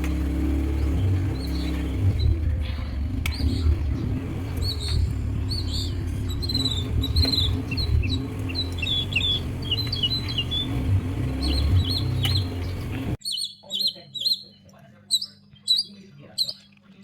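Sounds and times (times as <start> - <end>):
steady low rumble: 0.0 - 13.2
birds chirping: 0.0 - 17.0.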